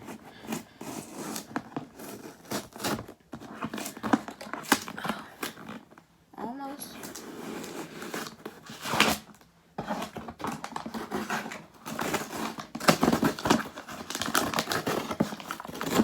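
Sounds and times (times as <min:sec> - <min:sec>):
packaging crinkling and rustling: 0:00.0 - 0:06.1, 0:06.8 - 0:16.0
package being torn open: 0:01.2 - 0:05.8, 0:07.0 - 0:16.0.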